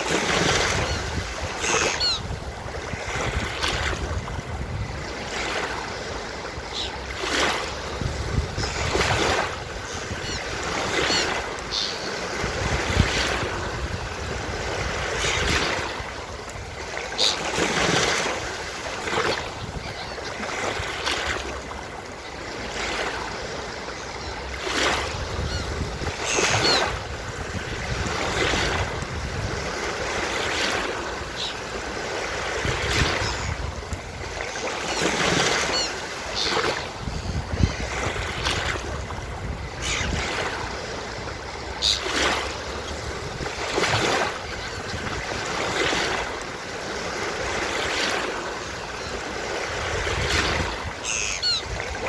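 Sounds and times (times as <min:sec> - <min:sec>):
ocean surf on beach: 0:00.0 - 0:52.0
seagulls calling: 0:00.3 - 0:02.4, 0:06.5 - 0:13.5, 0:16.9 - 0:18.3, 0:19.2 - 0:20.8, 0:23.8 - 0:27.1, 0:31.0 - 0:31.9, 0:34.3 - 0:38.2, 0:39.6 - 0:40.9, 0:41.5 - 0:43.1, 0:44.0 - 0:46.1, 0:50.4 - 0:52.0.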